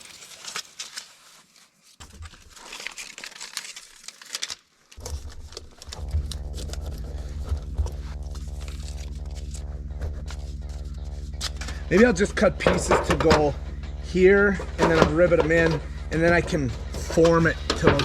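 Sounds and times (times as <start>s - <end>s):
tape crinkling and tearing: 0.0s - 11.8s
steady hum: 5.0s - 18.0s.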